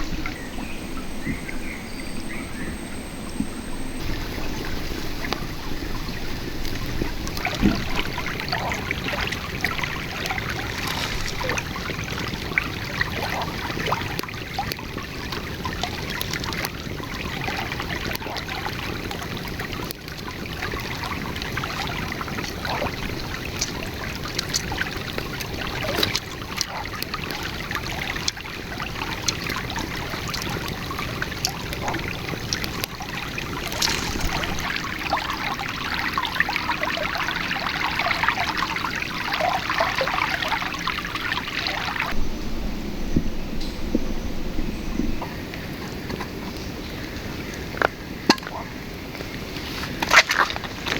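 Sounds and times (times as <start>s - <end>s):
river babbling over stones: 3.6s - 42.2s.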